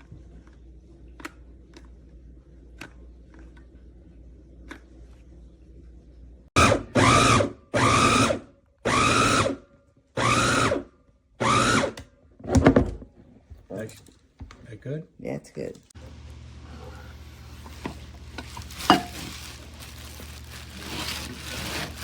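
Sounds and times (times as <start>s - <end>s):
food chopper motor bursts: 6.6s - 9.6s, 10.2s - 12.0s.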